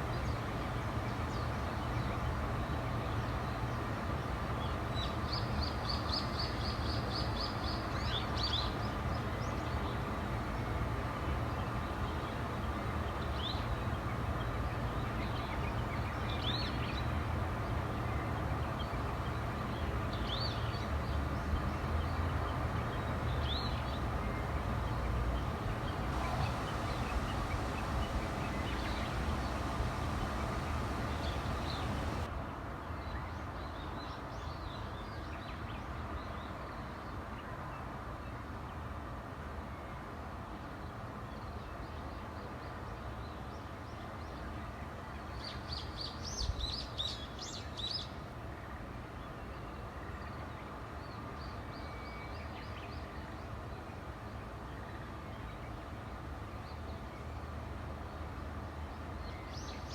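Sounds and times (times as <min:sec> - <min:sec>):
low background rumble: 0:25.4 - 0:32.3
birds chirping and trilling: 0:25.8 - 0:32.3.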